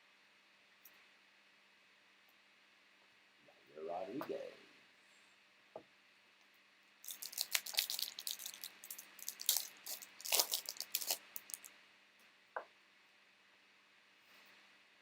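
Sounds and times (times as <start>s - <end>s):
foil wrapper crinkling and tearing: 7.0s - 11.7s.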